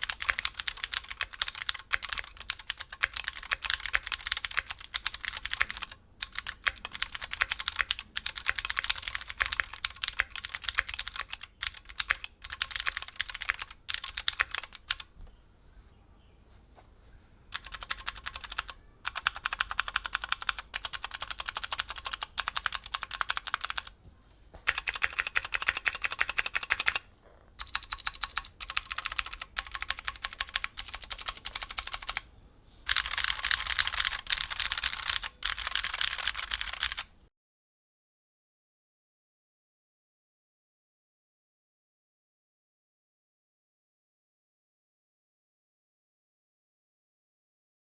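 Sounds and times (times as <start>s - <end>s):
clicky mechanical keyboard typing: 0.0s - 15.1s, 17.5s - 24.0s, 24.7s - 27.0s, 27.6s - 32.2s, 32.9s - 37.1s.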